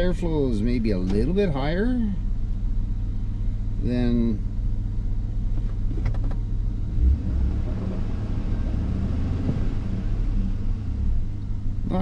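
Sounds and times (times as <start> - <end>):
engine idling with low rumble: 0.0 - 12.0.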